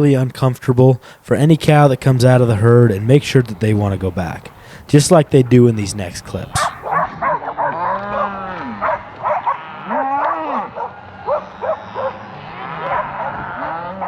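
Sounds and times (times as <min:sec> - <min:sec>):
cows mooing: 0:05.2 - 0:14.0.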